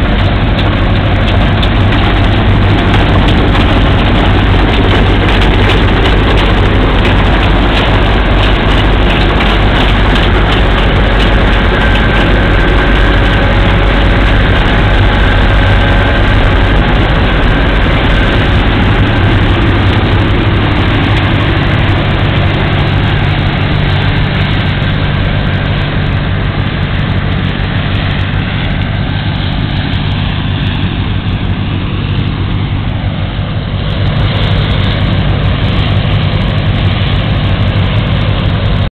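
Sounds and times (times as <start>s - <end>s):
diesel engine running under load: 0.0s - 38.9s
harvesting machinery working: 0.0s - 38.9s.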